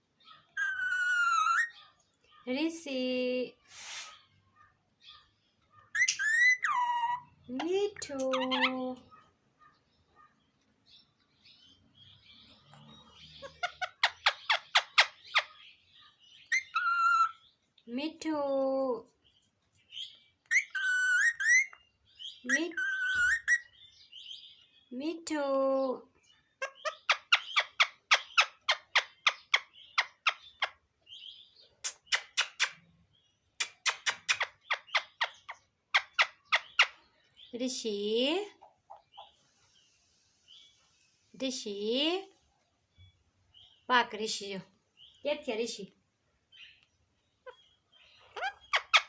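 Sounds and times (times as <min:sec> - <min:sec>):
parrot shrill calls: 0:00.5 - 0:02.0, 0:05.9 - 0:07.3, 0:16.4 - 0:17.4, 0:20.5 - 0:21.8, 0:22.7 - 0:23.8, 0:48.4 - 0:49.0.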